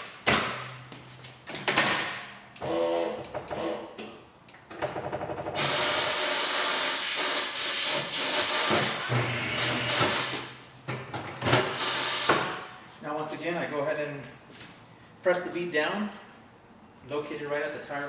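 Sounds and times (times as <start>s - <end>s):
air hissing: 5.6s - 9.0s, 11.8s - 12.5s.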